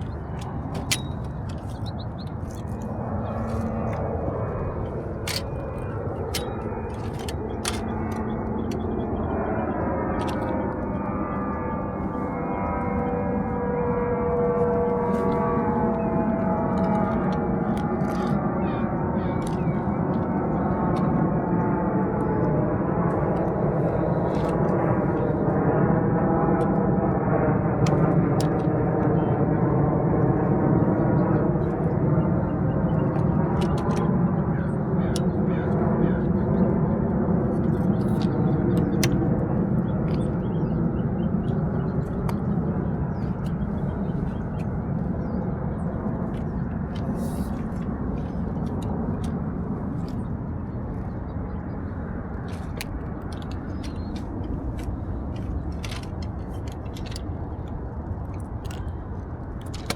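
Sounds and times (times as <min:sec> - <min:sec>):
small clicks and rustles: 0:00.0 - 0:09.2, 0:14.3 - 0:18.6, 0:22.3 - 0:25.5, 0:33.0 - 0:34.3, 0:37.5 - 0:59.9
engine drone: 0:00.0 - 0:59.9.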